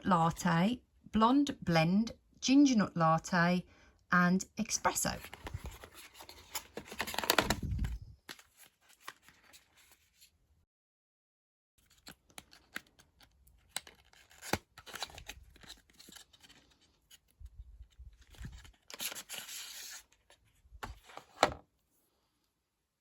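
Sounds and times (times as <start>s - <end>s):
packaging tearing and rustling: 5.3s - 9.9s, 11.8s - 17.2s, 18.2s - 20.1s.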